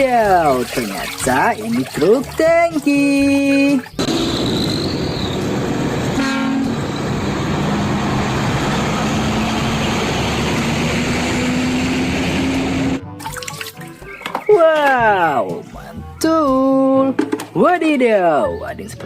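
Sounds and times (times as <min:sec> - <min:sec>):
heavy vehicle rumbling: 0:04.0 - 0:13.0
horn blast: 0:06.1 - 0:07.2.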